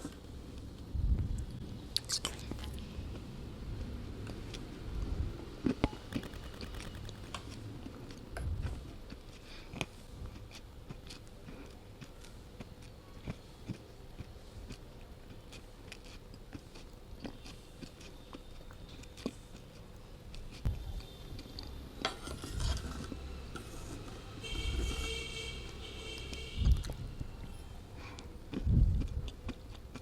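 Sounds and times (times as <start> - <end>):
person chewing crunchy pencil: 2.0 - 2.9, 4.3 - 21.7, 26.6 - 30.0.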